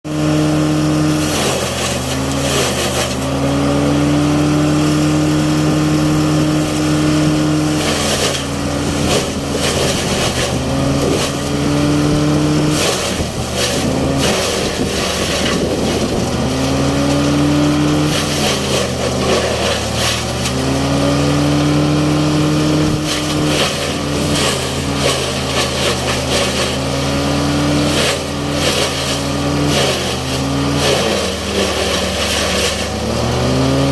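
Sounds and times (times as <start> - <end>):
machinery engine running: 0.1 - 33.9.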